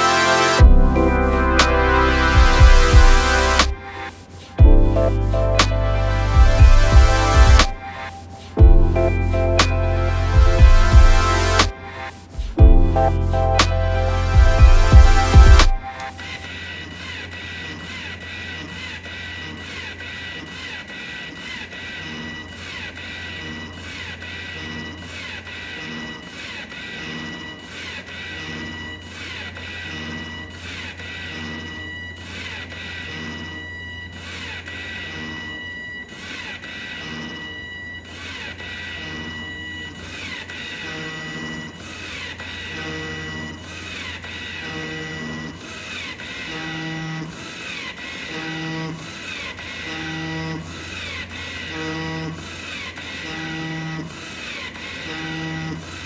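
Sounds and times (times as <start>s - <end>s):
steady low hum: 0.0s - 16.8s
ventilator whine and pulses: 0.0s - 19.2s.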